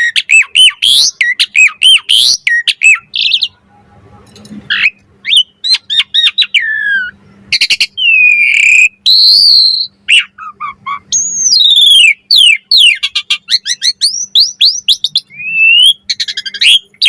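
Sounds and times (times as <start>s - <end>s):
bird chirps and whistles: 0.0s - 3.6s, 4.7s - 17.0s
starling singing whistled notes: 0.0s - 3.6s, 4.7s - 17.0s.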